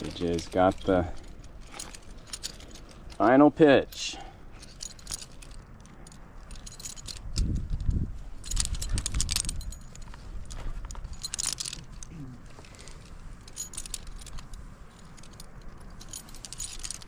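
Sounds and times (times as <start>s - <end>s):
climbing carabiners jingling and clinking: 0.0s - 17.0s.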